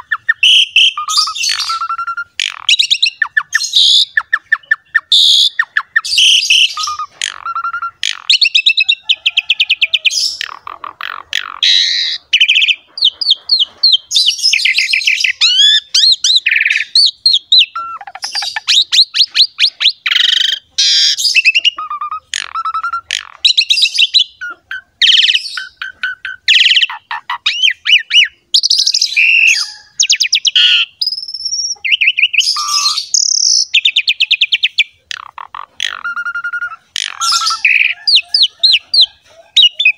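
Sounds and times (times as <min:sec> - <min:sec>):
starling singing: 0:00.0 - 0:39.9.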